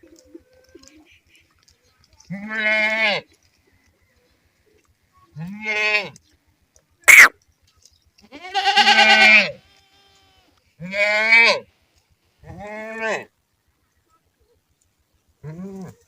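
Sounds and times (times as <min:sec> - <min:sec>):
goat bleating: 0:02.3 - 0:03.2, 0:07.1 - 0:07.3, 0:08.2 - 0:11.5.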